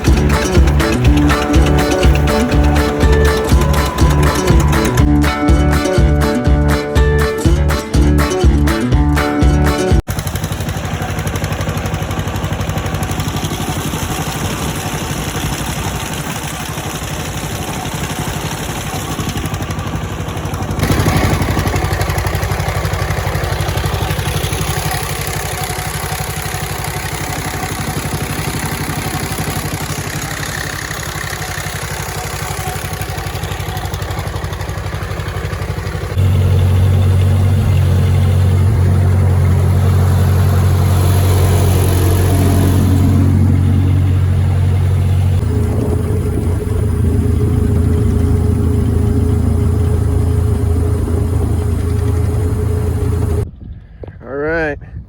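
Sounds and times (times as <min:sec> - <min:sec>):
engine running: 0:00.0 - 0:53.8.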